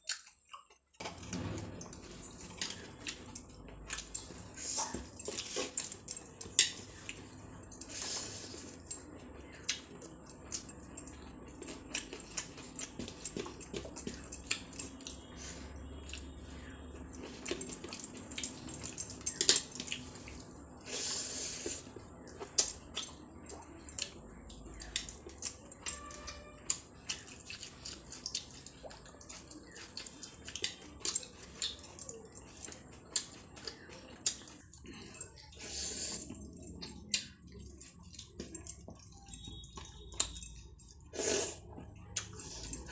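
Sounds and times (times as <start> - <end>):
wet eating and chewing: 0.0 - 42.9.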